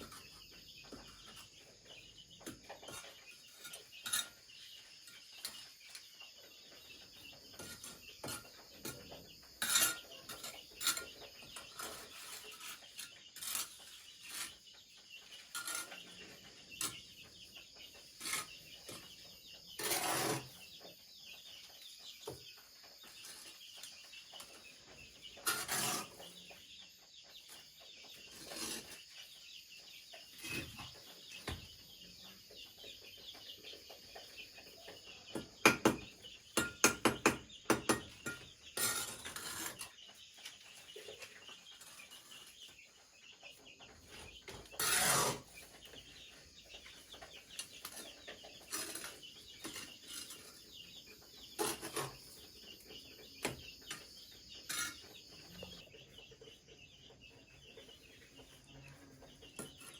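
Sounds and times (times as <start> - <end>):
sharp knocks and clatters: 35.2 - 42.7.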